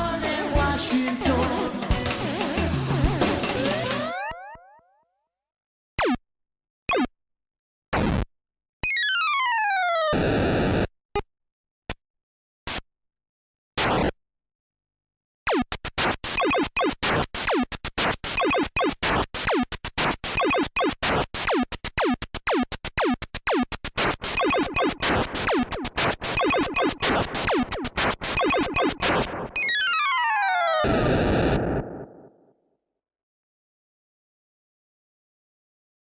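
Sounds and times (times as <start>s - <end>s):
electronic blips: 6.9s - 7.1s, 15.5s - 32.3s
electronic drum zaps: 15.5s - 29.8s.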